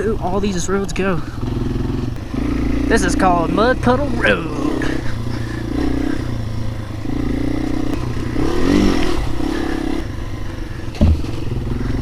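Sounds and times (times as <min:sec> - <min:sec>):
motorbike engine revving: 0:00.0 - 0:12.0
thump: 0:10.9 - 0:11.4.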